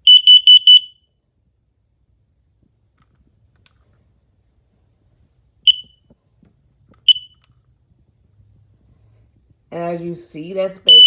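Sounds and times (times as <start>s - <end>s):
smoke alarm beeps: 0.0s - 1.2s, 5.6s - 6.2s, 7.0s - 7.5s.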